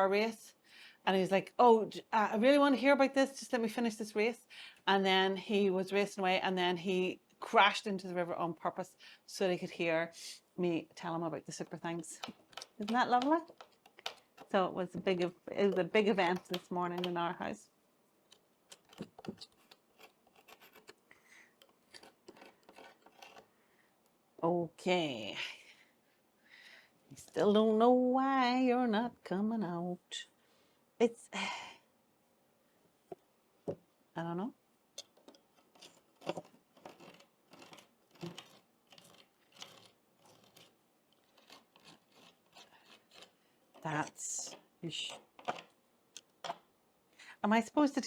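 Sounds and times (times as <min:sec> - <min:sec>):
scraping and clicking on wooden window: 0:12.0 - 0:14.6, 0:18.3 - 0:21.0, 0:21.6 - 0:23.5, 0:35.0 - 0:43.9.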